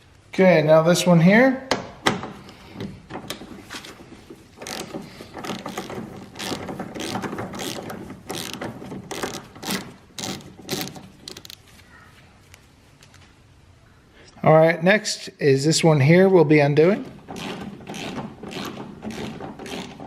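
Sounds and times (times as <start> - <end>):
ratchet wrench clicking: 4.6 - 11.6.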